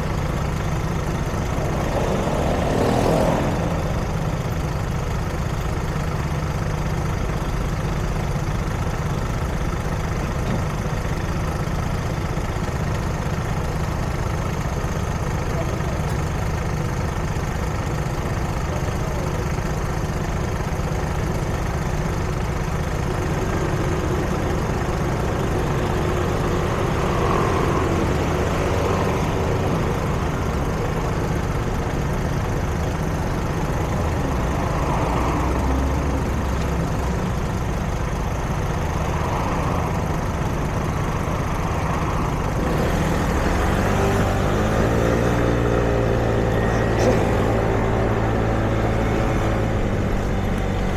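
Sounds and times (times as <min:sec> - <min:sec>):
rumble of traffic: 0:00.0 - 0:50.9
vehicle engine revving: 0:39.9 - 0:50.9.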